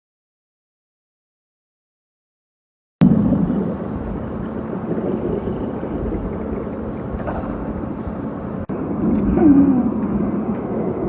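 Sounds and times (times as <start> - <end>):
stomach growling: 4.9 - 8.2, 8.9 - 11.0.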